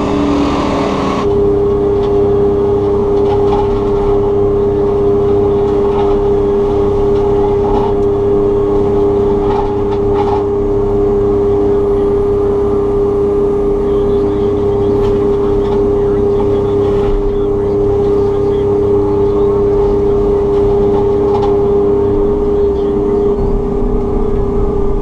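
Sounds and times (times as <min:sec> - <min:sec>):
constant machine hum: 0:00.0 - 0:25.0
excavator machine drone: 0:00.0 - 0:25.0.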